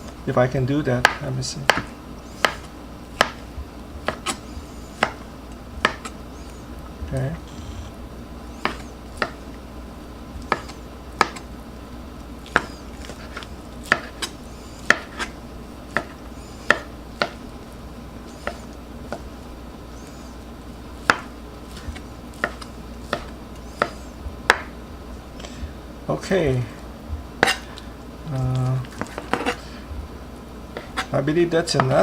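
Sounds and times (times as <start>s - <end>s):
knife chopping on cutting board: 1.0s - 5.2s, 5.8s - 6.2s, 8.6s - 9.4s, 10.4s - 11.5s, 12.5s - 17.4s, 18.3s - 19.3s, 21.0s - 24.8s, 27.4s - 27.7s.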